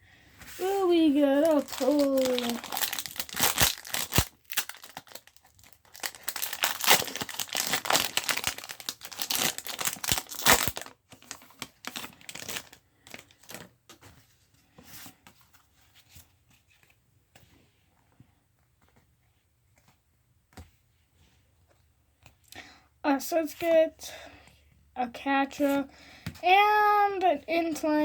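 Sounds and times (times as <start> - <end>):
foil wrapper crinkling and tearing: 0.6 - 13.7
cards rustling: 0.6 - 14.1.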